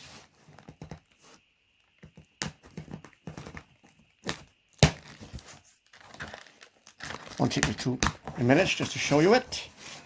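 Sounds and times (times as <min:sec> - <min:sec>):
packaging crinkling: 0:04.2 - 0:08.0.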